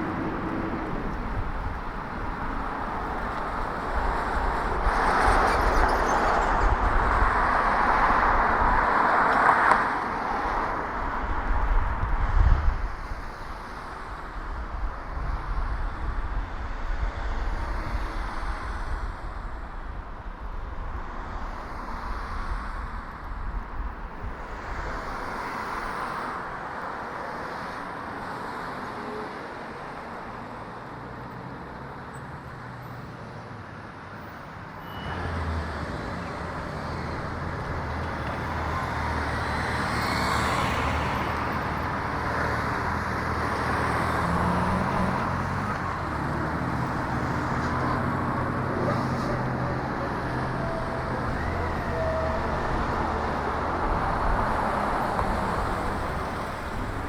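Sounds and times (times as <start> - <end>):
vehicle engine hum: 0.0 - 26.0, 34.2 - 57.0
road traffic noise: 0.0 - 57.0
car passing close by: 34.8 - 57.0.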